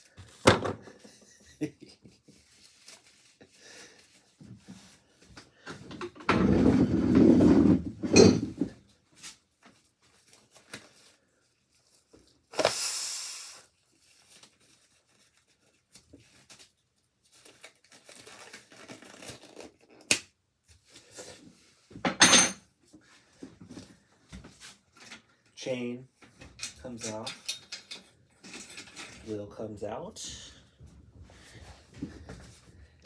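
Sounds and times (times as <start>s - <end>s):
rustling: 2.2s - 5.2s.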